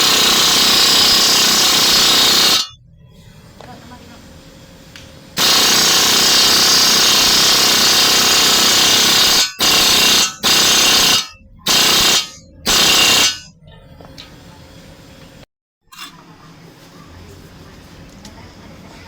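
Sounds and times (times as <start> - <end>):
power tool running in bursts: 0.0 - 2.7, 5.4 - 13.5.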